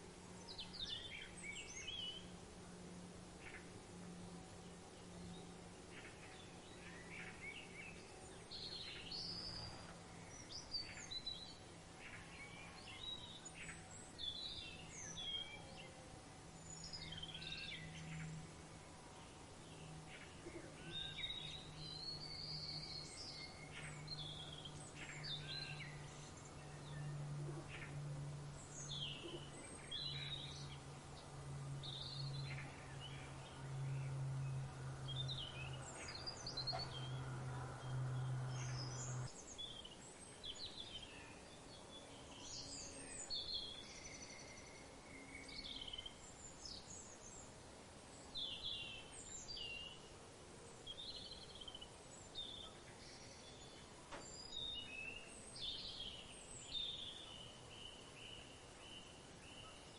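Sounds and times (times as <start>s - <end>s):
steady low hum: 0.0s - 40.3s
birds chirping and calling: 31.8s - 39.3s.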